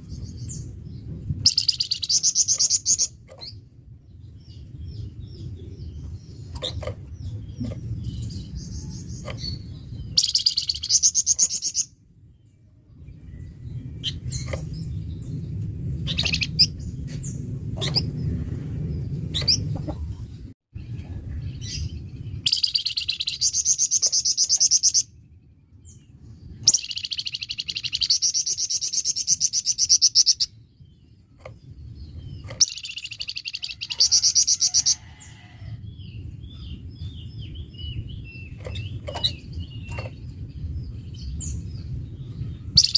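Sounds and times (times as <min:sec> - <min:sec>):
bird chirps: 0:00.0 - 0:18.4, 0:19.0 - 0:35.0, 0:36.1 - 0:42.9
low rumbling background noise: 0:00.0 - 0:42.9
songbird singing rapid bursts: 0:04.3 - 0:12.0, 0:21.6 - 0:25.2, 0:26.5 - 0:34.9.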